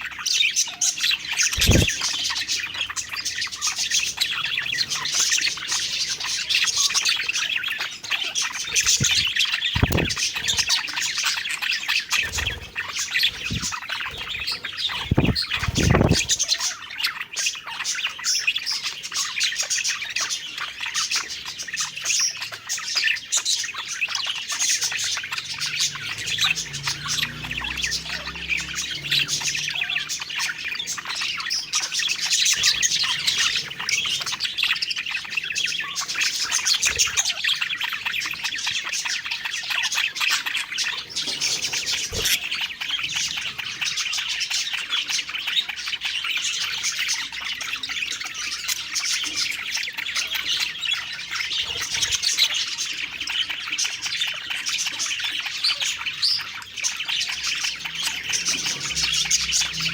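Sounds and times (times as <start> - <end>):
budgerigars chattering and chirping: 0.0 - 59.9.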